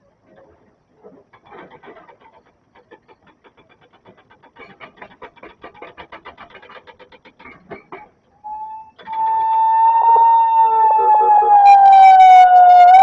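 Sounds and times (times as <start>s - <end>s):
fast faint rattling clicks: 1.8s - 8.1s
warning siren tone: 8.5s - 13.0s.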